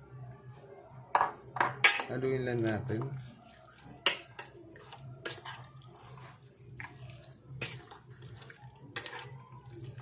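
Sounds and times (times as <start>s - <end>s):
wet mixing of meat: 2.1s - 10.0s.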